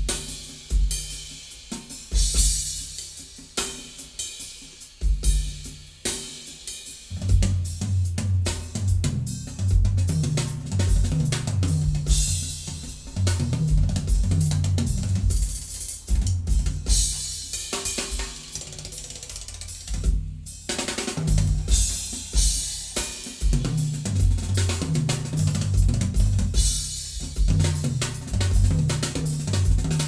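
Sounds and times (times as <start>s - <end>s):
drum kit playing: 0.0s - 30.0s
stepping bass line: 7.2s - 15.4s.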